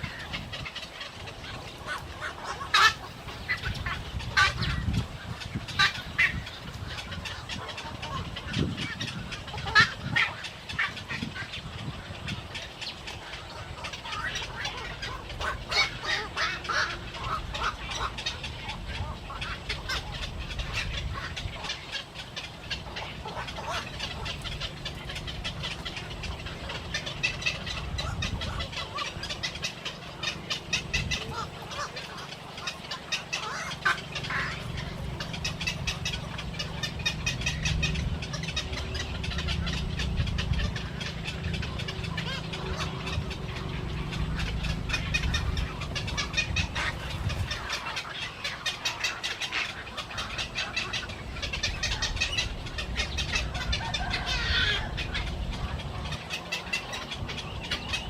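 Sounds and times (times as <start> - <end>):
ducks calling: 0.0 - 58.0
steady low rumble: 0.0 - 58.0.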